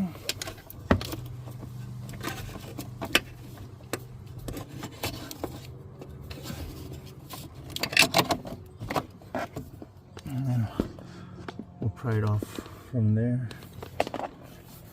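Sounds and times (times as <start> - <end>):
clicks knocks and scrapes: 0.2 - 10.3.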